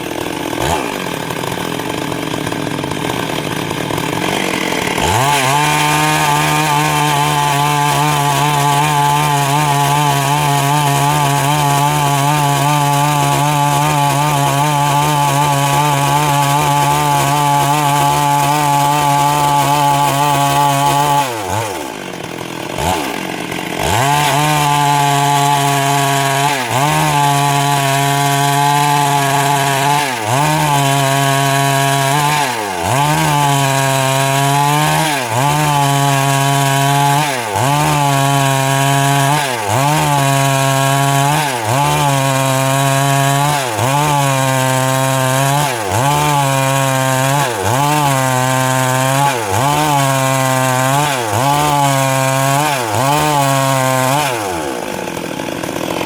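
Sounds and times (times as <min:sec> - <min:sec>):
chainsaw cutting wood: 0:00.0 - 0:56.0.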